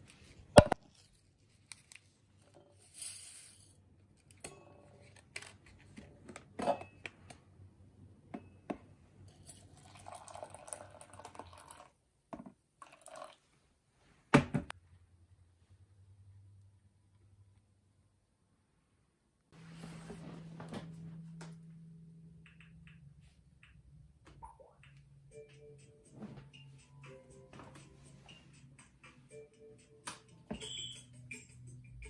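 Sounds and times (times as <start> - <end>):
faint low hum: 14.8 - 26.5.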